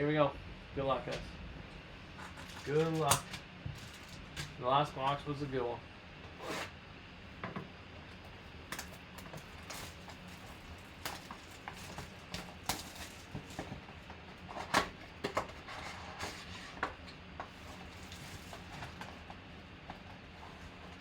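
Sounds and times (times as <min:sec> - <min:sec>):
wrapping rustling: 0:02.2 - 0:04.6, 0:08.8 - 0:13.8, 0:17.6 - 0:19.1.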